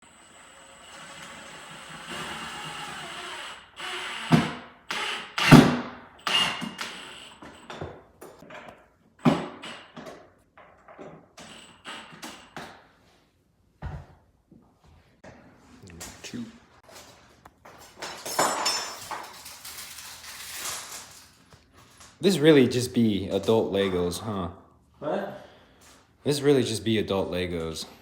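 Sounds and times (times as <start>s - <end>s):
power tool running: 0.0s - 7.5s.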